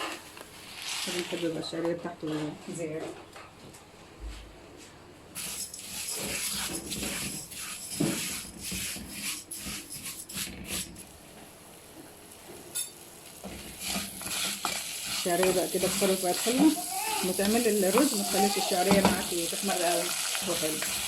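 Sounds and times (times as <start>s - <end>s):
spoon scraping a pot: 5.4s - 11.1s, 12.7s - 21.0s
noodles sizzling in oil: 5.4s - 21.0s.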